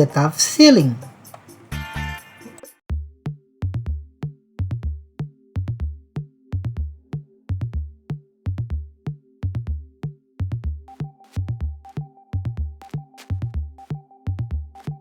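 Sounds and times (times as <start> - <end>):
electronic music with drum-machine beat: 5.2 - 15.0.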